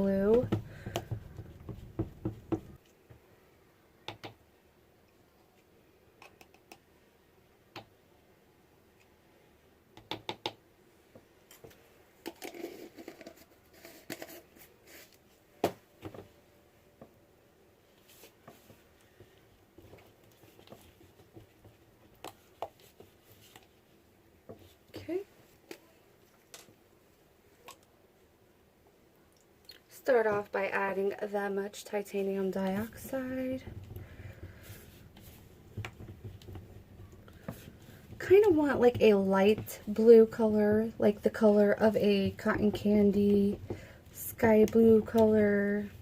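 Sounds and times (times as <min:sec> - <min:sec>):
soft squishing stir: 0:00.0 - 0:03.3, 0:17.8 - 0:27.9, 0:31.9 - 0:46.0.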